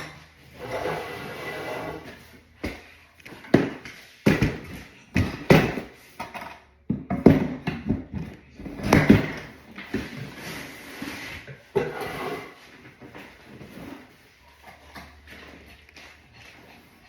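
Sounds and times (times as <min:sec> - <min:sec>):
hard objects knocking and clattering: 0:03.4 - 0:10.1.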